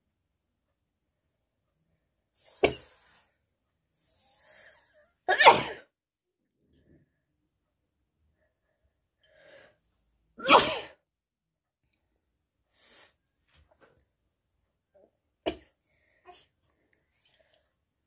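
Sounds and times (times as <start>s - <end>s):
person sneezing: 5.3s - 5.9s, 10.4s - 11.0s.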